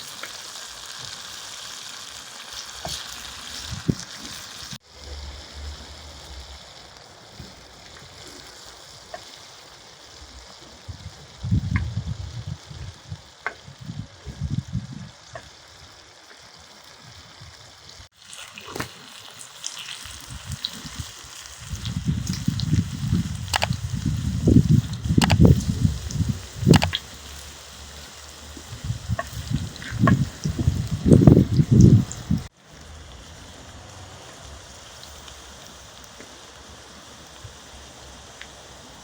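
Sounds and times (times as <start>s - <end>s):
food sizzling in a pan: 0.0s - 39.0s
low bumps and rumbles: 11.0s - 15.1s.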